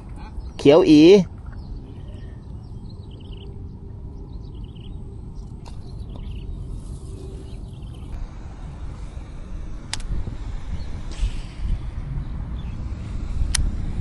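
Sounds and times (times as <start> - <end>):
wind rumble on microphone: 1.2 - 14.0
small bird chirping: 1.5 - 3.6, 4.2 - 8.1.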